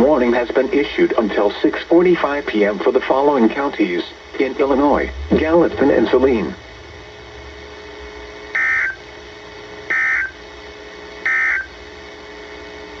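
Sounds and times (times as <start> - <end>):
faint steady hum: 0.0 - 13.0
buzzy two-tone data bursts: 8.5 - 9.0, 9.9 - 10.4, 11.2 - 11.7.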